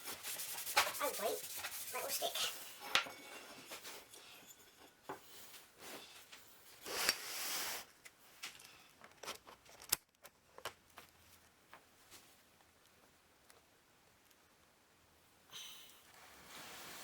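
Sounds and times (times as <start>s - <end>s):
tape rustling scrape: 0.0s - 2.5s.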